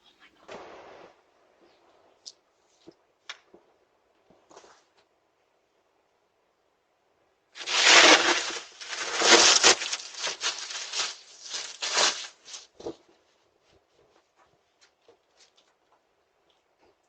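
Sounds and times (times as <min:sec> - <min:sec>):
loud rustling and crinkling: 0:07.6 - 0:16.0.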